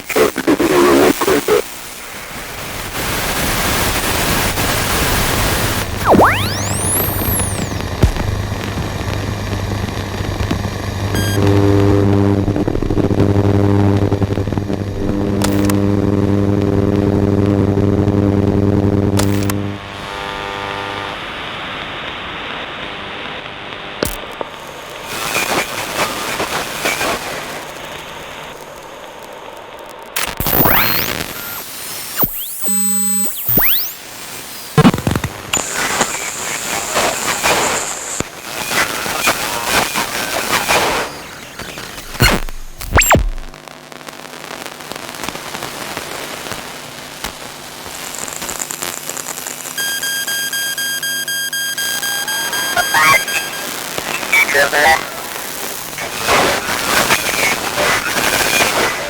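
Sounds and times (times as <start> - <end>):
burst of static: 0.0 - 17.7, 18.8 - 59.0
high steady whine: 0.1 - 59.0
steady electronic tone: 6.0 - 7.8, 49.8 - 53.8
harsh buzzing tone: 6.0 - 8.0, 11.1 - 21.2, 30.2 - 43.6, 48.6 - 55.4
whistles gliding up and down: 51.5 - 53.6.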